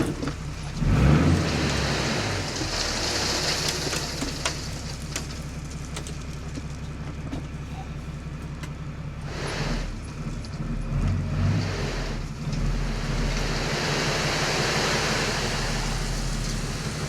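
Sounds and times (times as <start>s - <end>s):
truck engine running: 0.0s - 17.0s
hiss: 9.3s - 9.9s, 12.8s - 17.0s.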